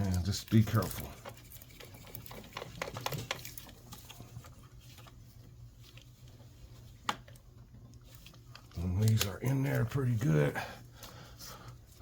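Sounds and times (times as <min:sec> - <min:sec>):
low steady hum: 0:00.0 - 0:12.0
plastic clicks and rattles: 0:02.2 - 0:04.2.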